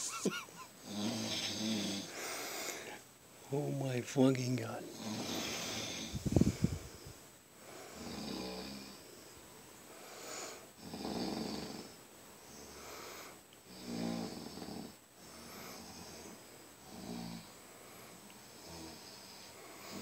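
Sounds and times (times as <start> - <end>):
man snoring: 0.8 - 3.0, 4.9 - 6.8, 7.7 - 9.0, 10.2 - 12.0, 12.6 - 17.6, 18.5 - 20.0.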